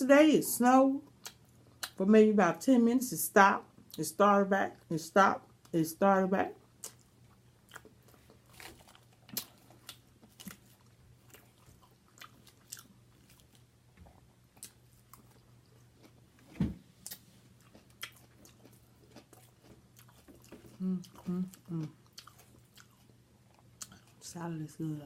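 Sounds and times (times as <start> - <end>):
person chewing food: 1.1 - 2.0, 6.6 - 24.2.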